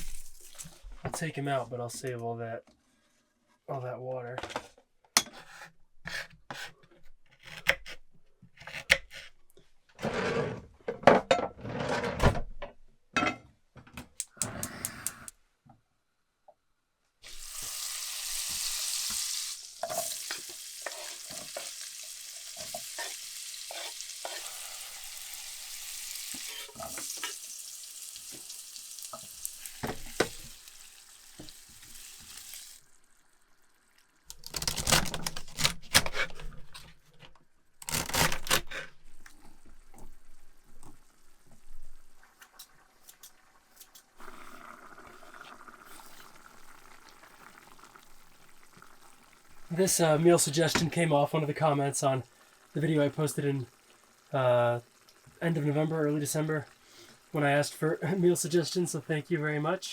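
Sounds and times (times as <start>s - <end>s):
food sizzling in a pan: 0.0s - 0.8s, 17.2s - 34.2s, 42.1s - 50.6s, 51.6s - 59.0s
kitchen knocks and scraping: 10.0s - 14.7s, 29.2s - 30.5s.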